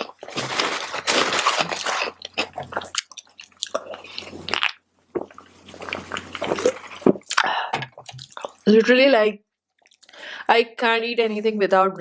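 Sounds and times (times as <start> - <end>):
person chewing food: 0.0 - 8.7, 9.6 - 10.2.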